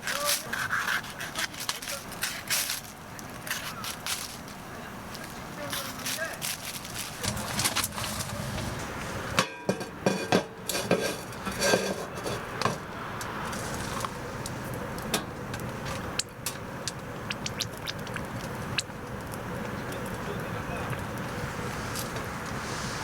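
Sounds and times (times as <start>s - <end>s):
metal cookware clinking: 9.4s - 12.9s.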